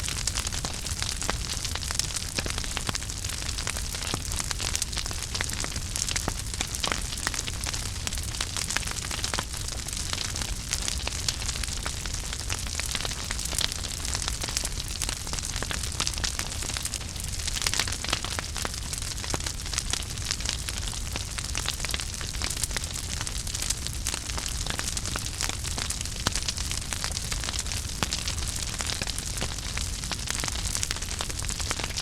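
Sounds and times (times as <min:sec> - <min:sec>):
fire pops and snaps: 0:00.0 - 0:32.0
flames hissing and rumbling: 0:00.0 - 0:32.0.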